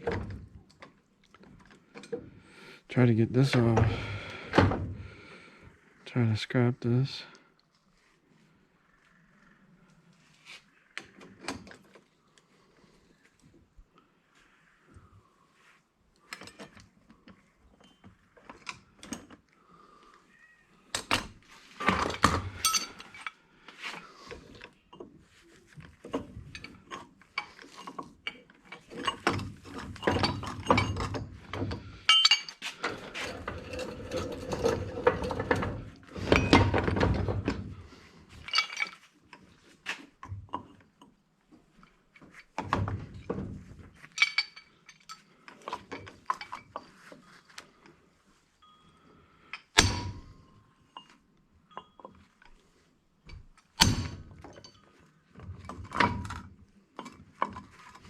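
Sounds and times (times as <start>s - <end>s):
metal clicks and clinks: 22.1s - 23.4s, 32.1s - 32.6s, 44.0s - 47.0s.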